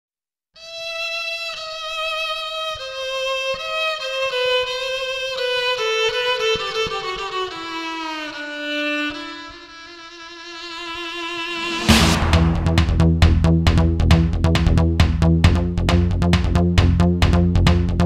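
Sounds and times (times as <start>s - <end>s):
slow solo violin melody: 0.6s - 12.0s.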